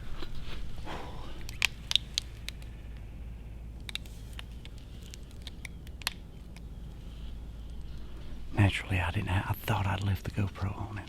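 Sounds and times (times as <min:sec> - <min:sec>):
low steady hum: 0:00.0 - 0:11.0
small sharp clicks: 0:01.4 - 0:03.1, 0:03.8 - 0:06.7.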